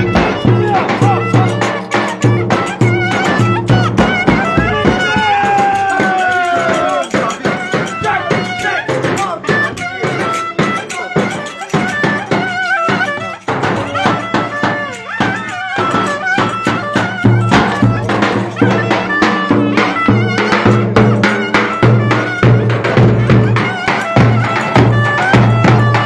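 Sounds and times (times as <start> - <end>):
drum beats: 0.0 - 26.0
reedy wind instrument melody: 0.0 - 26.0.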